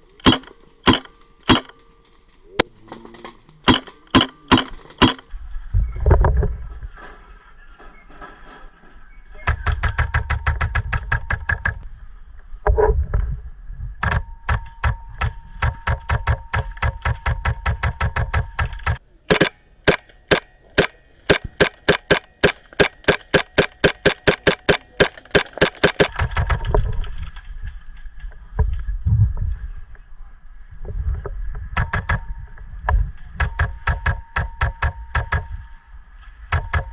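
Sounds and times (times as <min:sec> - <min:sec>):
airsoft guns firing: 0:00.2 - 0:01.8, 0:03.7 - 0:05.2, 0:09.4 - 0:11.8, 0:14.0 - 0:26.7, 0:33.4 - 0:35.6.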